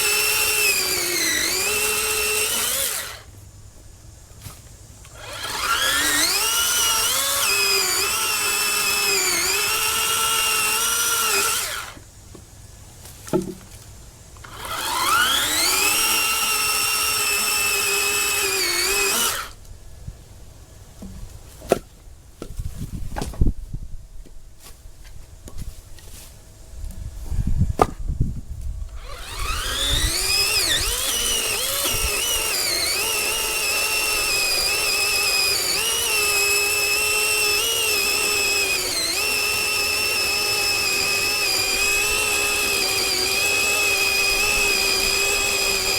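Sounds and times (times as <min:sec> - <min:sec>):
electric chainsaw whining: 0:00.0 - 0:03.4, 0:05.1 - 0:12.0, 0:14.4 - 0:19.6, 0:28.9 - 0:45.9.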